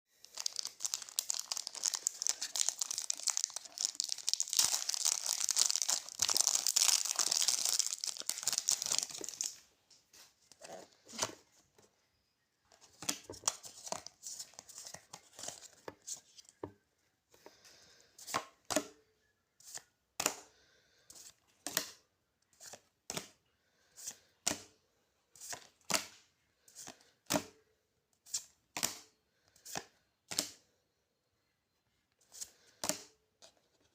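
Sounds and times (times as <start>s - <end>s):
foil wrapper tearing and crinkling: 0.2s - 9.6s.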